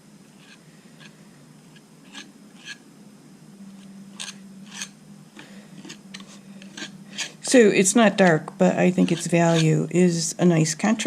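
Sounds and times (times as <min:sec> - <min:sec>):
palette knife scraping on canvas: 0:00.4 - 0:02.8, 0:05.8 - 0:07.5, 0:09.0 - 0:09.8.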